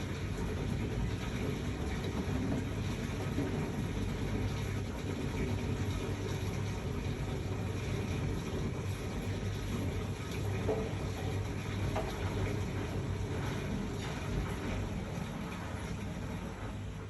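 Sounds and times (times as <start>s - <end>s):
washing machine motor hum: 0.0s - 17.0s
water sloshing in washer: 0.0s - 17.0s.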